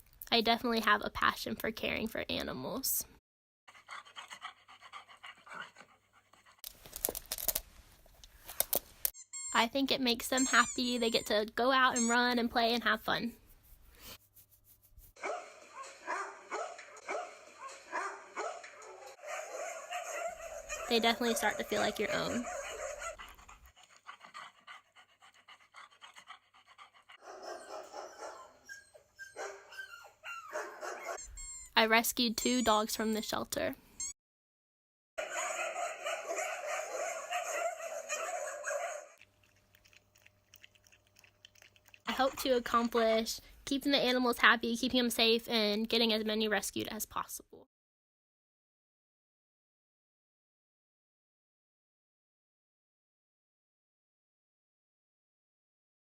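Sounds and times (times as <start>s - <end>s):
dog panting: 3.7s - 6.6s, 15.2s - 31.3s
dog whining: 15.2s - 24.5s, 27.1s - 31.8s, 35.2s - 39.2s.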